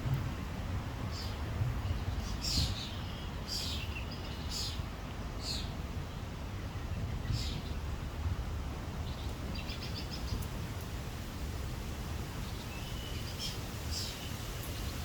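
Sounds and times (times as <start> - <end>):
low outdoor rumble: 0.0 - 13.0
wild birds chirping: 9.0 - 10.6, 12.3 - 15.0.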